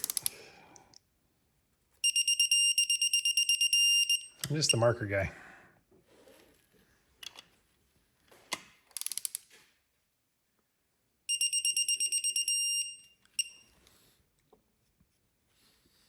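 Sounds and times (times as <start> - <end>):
sharp wrench clicks: 0.0 - 0.4, 8.9 - 9.5
digital torque wrench beeping: 2.0 - 4.9, 11.3 - 13.6.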